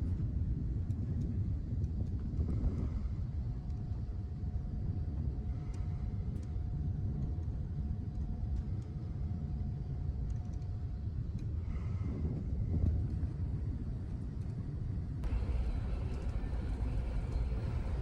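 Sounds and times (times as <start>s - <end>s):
faint steady whine: 2.4s - 18.0s
ferry low rumble: 15.2s - 18.0s.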